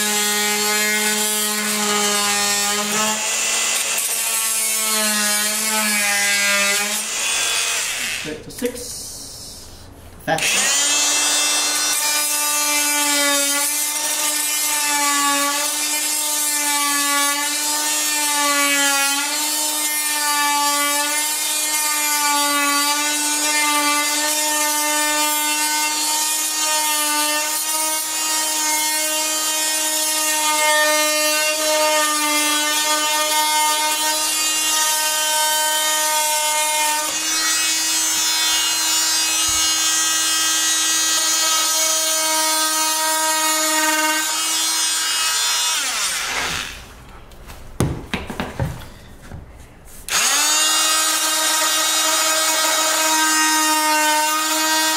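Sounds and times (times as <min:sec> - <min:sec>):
oscillating tool cutting wood: 0:10.4 - 0:46.8, 0:50.1 - 0:54.9.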